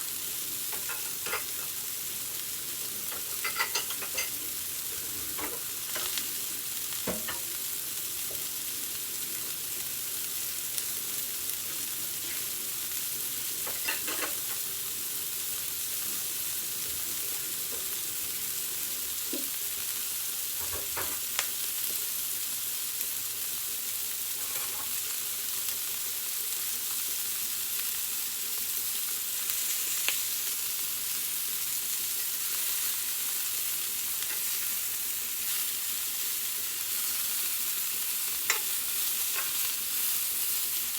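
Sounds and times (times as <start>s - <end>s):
food sizzling in a pan: 0.0s - 40.9s.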